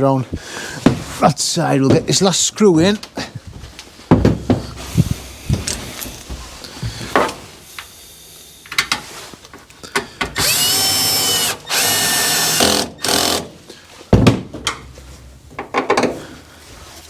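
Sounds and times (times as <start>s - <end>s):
drill driver motor whine: 10.4s - 13.4s.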